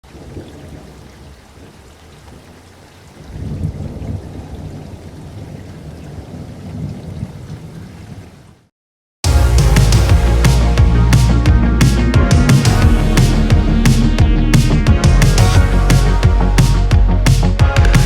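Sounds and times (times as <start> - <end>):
low rumbling: 9.3 - 18.0.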